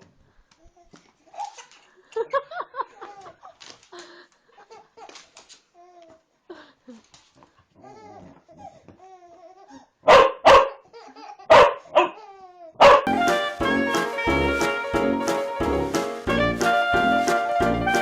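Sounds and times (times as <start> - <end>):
dog barking loudly: 10.0 - 10.8, 11.5 - 12.2, 12.8 - 13.1
music: 13.1 - 18.0.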